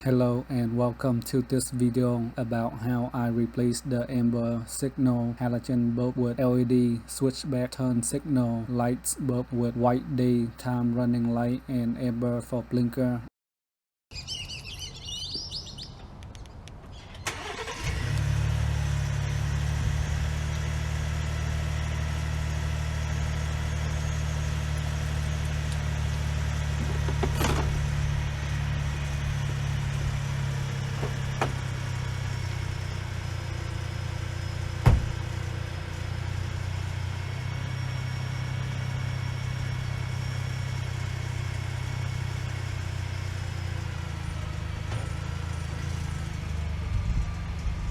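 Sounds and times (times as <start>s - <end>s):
engine starting and idling: 16.9s - 46.5s.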